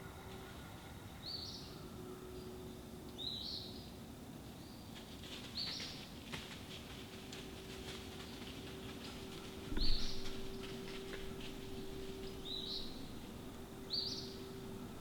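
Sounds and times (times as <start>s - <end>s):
songbird calling: 9.7s - 10.6s, 12.2s - 15.0s.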